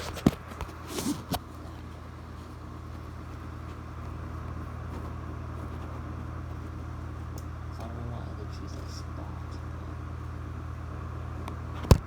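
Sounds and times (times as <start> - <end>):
electric fan humming: 0.0 - 12.0.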